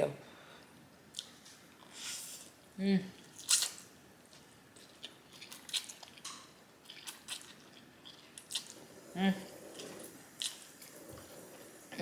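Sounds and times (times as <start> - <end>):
person chewing food: 1.1 - 2.6, 3.2 - 11.7
wet mouth clicks and smacks: 3.2 - 3.9.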